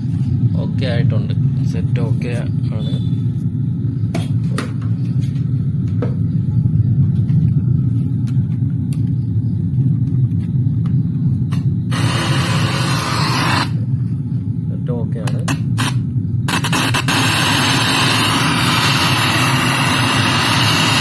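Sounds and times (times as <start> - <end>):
speakers low rumble: 0.0 - 12.8, 13.8 - 19.0
loud rush of hiss: 11.9 - 13.8, 16.5 - 21.0.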